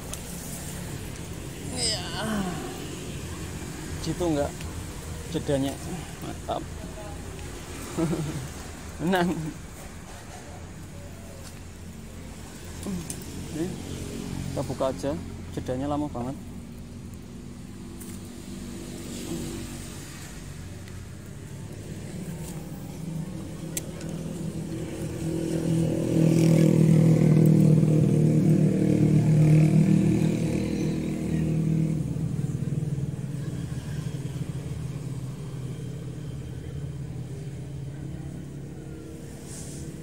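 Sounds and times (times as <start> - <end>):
vehicle engine passing by: 0.0 - 40.0.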